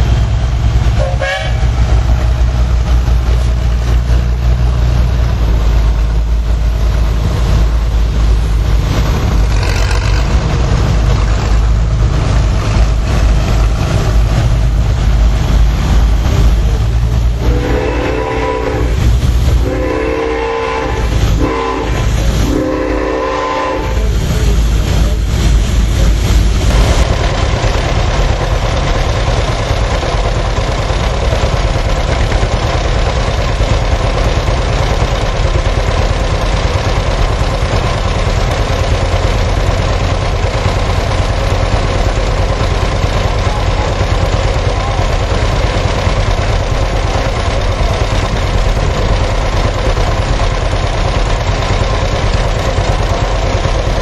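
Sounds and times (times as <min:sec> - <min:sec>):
threshing machinery running: 0:00.0 - 0:54.0
steam whistle blasts: 0:01.0 - 0:01.8, 0:17.4 - 0:19.0, 0:19.6 - 0:24.2.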